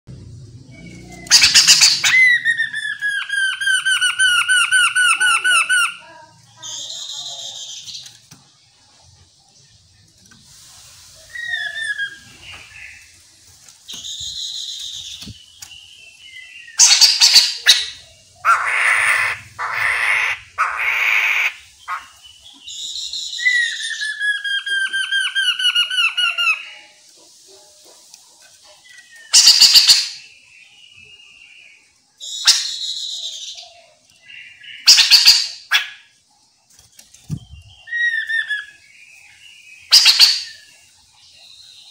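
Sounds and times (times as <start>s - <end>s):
bird whistled phrases: 0.7s - 7.9s, 11.2s - 13.0s, 13.9s - 15.4s, 16.4s - 26.9s, 32.2s - 33.6s, 37.3s - 38.8s, 39.8s - 40.8s
bird harsh chattering: 0.8s - 8.1s, 16.8s - 22.3s, 29.2s - 30.3s, 34.6s - 36.2s, 39.9s - 40.7s.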